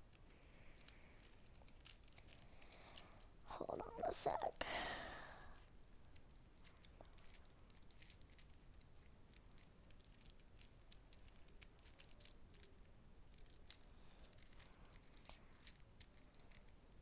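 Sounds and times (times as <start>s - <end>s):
small clicks and rustles: 0.0s - 4.6s, 5.3s - 17.0s.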